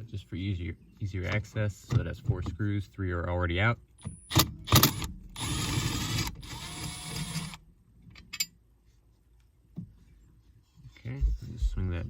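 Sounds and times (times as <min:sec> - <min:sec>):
cordless drill running: 0:04.7 - 0:07.6.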